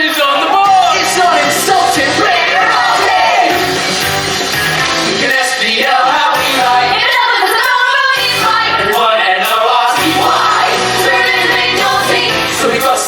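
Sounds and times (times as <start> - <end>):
band accompaniment: 0.0 - 13.0
musical theatre singing: 0.0 - 13.0.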